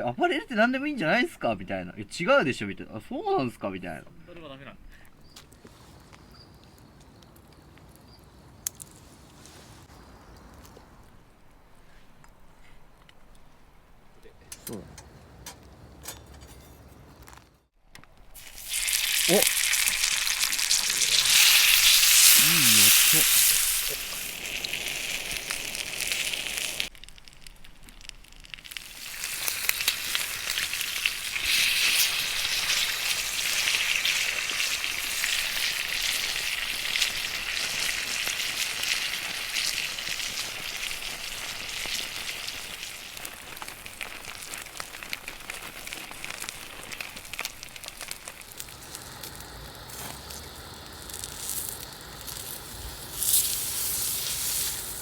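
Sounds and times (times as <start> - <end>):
pork sizzling in hot fat: 18.3 - 55.0.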